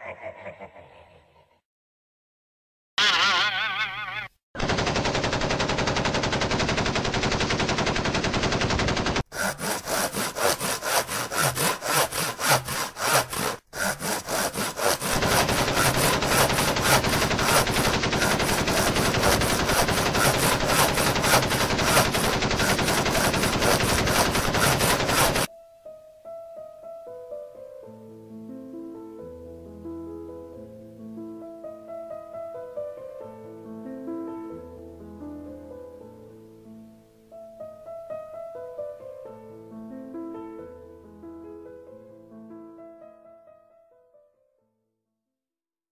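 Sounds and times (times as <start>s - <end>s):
loud rapid rattling: 4.6s - 25.5s.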